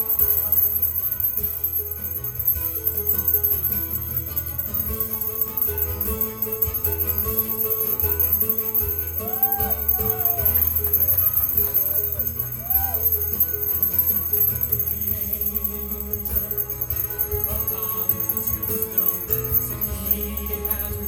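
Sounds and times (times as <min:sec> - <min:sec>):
gospel music: 0:00.0 - 0:21.0
sliding pitched notes: 0:00.0 - 0:21.0.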